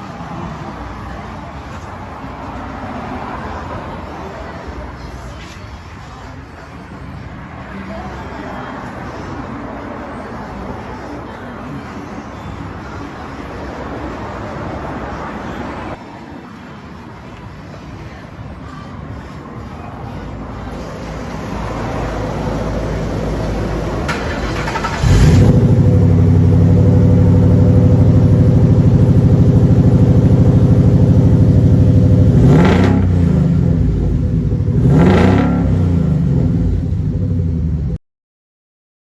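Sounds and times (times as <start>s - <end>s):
car exhaust rumbling: 20.8s - 38.0s.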